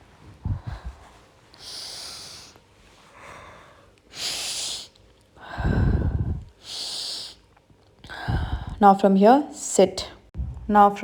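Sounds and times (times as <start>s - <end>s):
person breathing deeply: 0.4s - 7.4s, 8.0s - 8.8s
low rumble: 10.4s - 11.0s.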